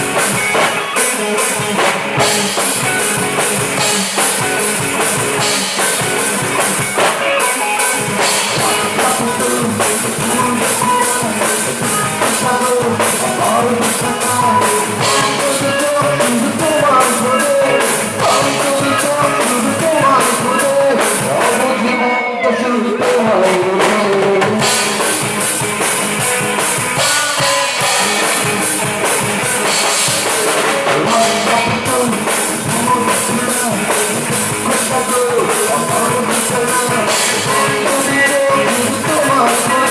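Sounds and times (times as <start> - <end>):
rock band playing: 0.0 - 39.9.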